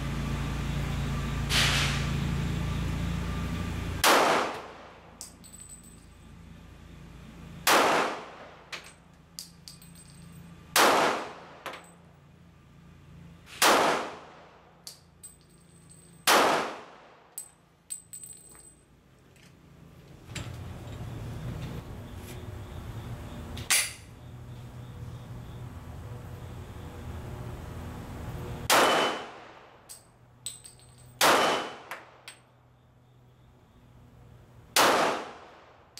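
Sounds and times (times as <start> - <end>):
pistol shots with echo: 4.0 - 5.0, 7.7 - 8.6, 10.8 - 11.7, 13.6 - 14.5, 16.2 - 17.2, 28.7 - 29.7, 31.2 - 32.2, 34.8 - 35.8.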